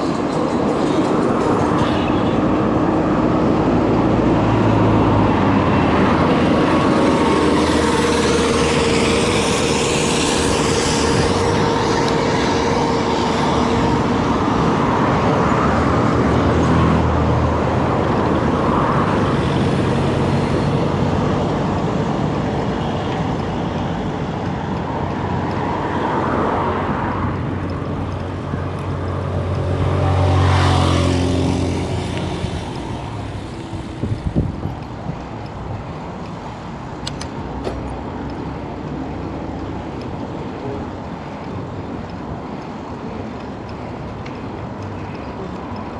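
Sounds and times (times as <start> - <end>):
road noise: 0.0 - 45.9
vehicle engine: 0.0 - 45.9
vehicle passing: 2.4 - 34.9.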